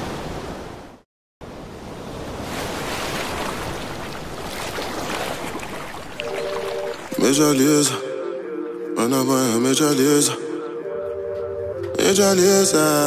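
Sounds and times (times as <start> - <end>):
song: 6.2 - 13.0.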